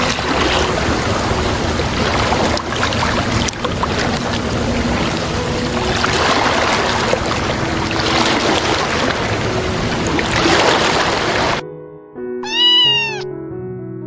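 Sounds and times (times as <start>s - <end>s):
soft background music: 0.1s - 12.1s.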